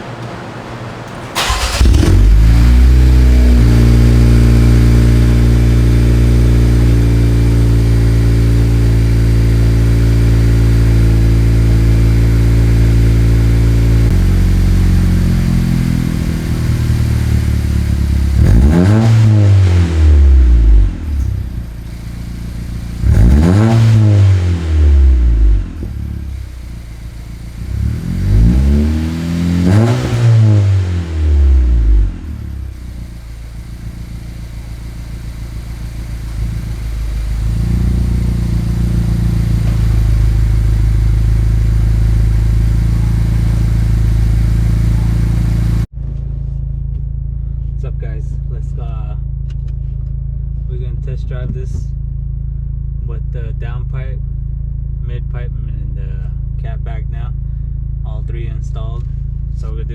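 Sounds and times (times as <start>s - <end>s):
car engine revving: 0.0s - 45.9s
car engine idling: 0.0s - 59.9s.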